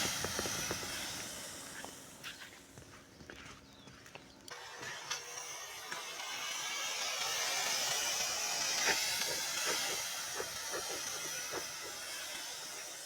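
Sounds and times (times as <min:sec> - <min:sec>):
fire hissing: 0:00.0 - 0:02.9.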